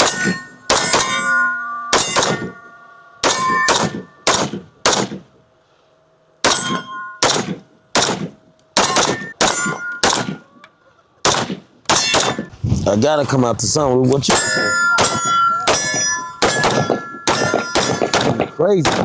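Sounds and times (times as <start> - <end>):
gunshots: 0.0 - 1.2, 1.9 - 2.5, 3.2 - 5.3, 6.4 - 10.4, 11.2 - 12.5, 14.3 - 19.0
steel targets ringing: 0.0 - 10.6, 11.9 - 12.5, 13.8 - 19.0.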